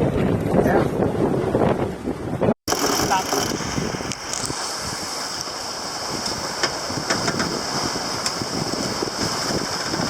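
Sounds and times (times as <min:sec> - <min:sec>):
water rushing past boat: 0:00.0 - 0:10.0
wind rushing: 0:00.0 - 0:10.0.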